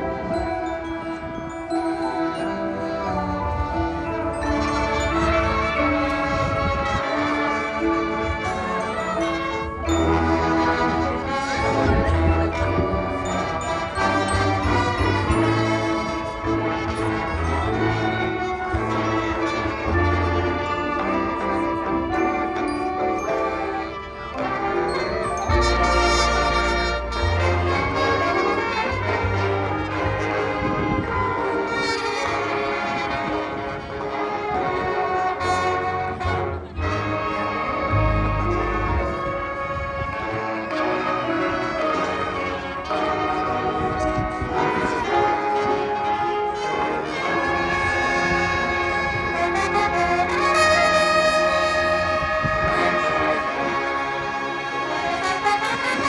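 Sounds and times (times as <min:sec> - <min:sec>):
marching band playing: 0:00.0 - 0:56.0.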